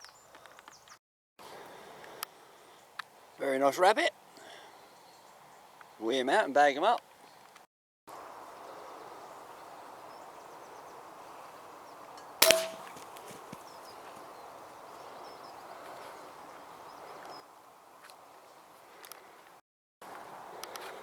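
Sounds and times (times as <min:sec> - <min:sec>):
brief metallic ring: 0:12.4 - 0:13.0
air rifle shot: 0:12.4 - 0:13.1.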